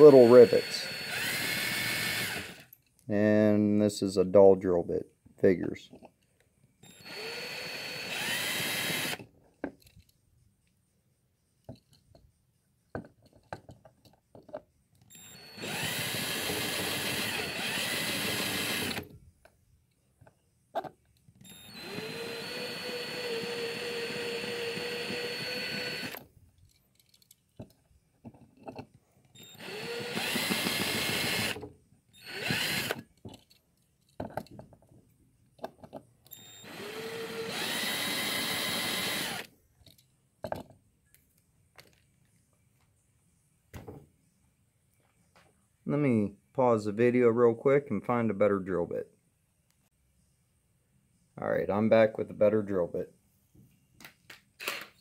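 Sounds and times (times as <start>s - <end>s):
power drill whine: 0.0s - 2.8s, 6.8s - 9.3s, 15.1s - 19.1s, 21.4s - 26.2s, 29.3s - 33.1s, 36.3s - 39.5s, 54.6s - 55.0s
handling clicks and knocks: 12.9s - 14.7s, 33.0s - 36.3s.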